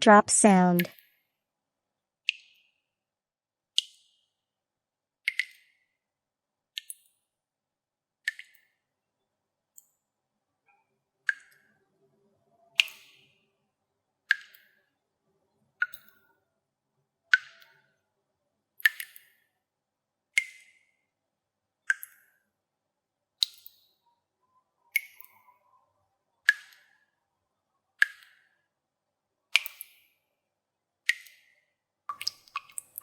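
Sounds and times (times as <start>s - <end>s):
water drops plinking into water: 32.1s - 33.0s.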